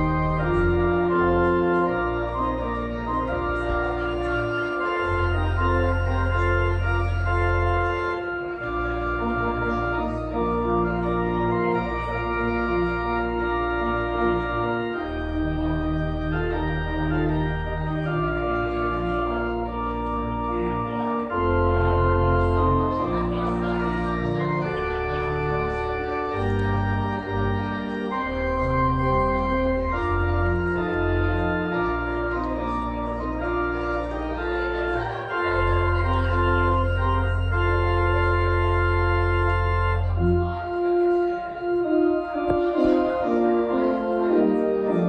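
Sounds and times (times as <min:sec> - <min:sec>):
organ playing sustained chords: 0:00.0 - 0:45.0.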